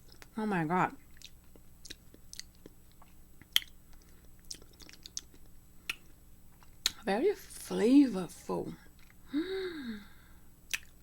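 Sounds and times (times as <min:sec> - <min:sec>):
mouth chewing: 0:01.0 - 0:07.0, 0:10.7 - 0:11.0
wet mouth clicks: 0:01.2 - 0:06.1, 0:10.7 - 0:11.0.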